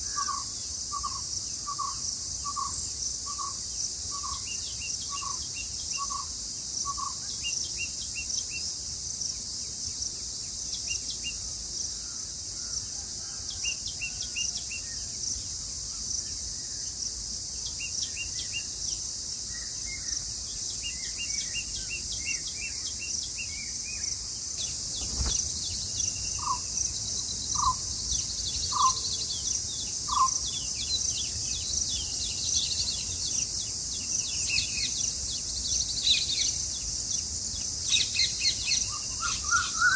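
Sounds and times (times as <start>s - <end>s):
short bird chirps: 24.6s - 25.5s.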